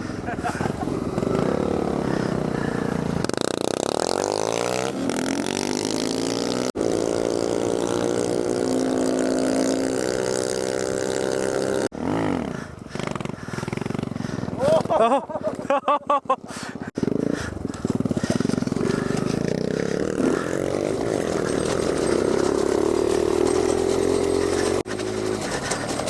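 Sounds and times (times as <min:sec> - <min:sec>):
small motorcycle engine revving: 0:00.0 - 0:15.5, 0:16.1 - 0:26.0.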